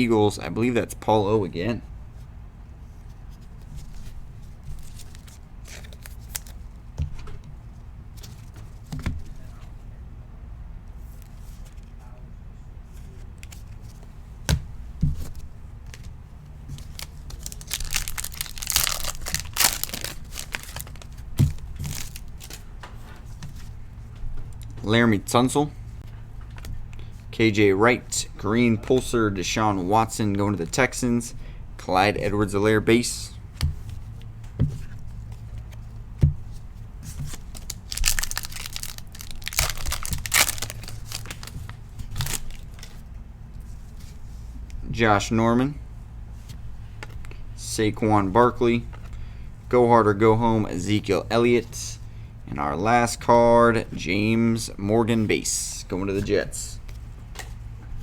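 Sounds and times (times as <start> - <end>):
wrapper tearing and crinkling: 4.8 - 6.6, 16.7 - 22.6, 37.3 - 43.0
cards knocking: 16.8 - 22.6.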